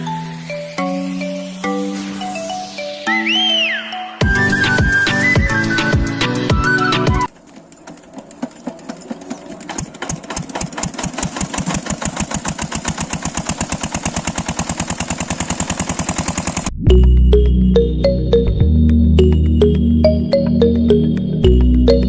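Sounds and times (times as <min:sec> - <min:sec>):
small engine starting and running: 0:04.3 - 0:17.0.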